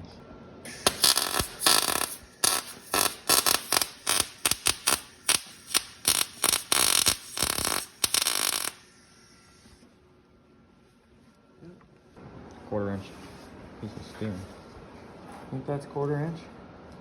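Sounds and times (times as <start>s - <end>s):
welder arc crackling: 0.7s - 8.9s.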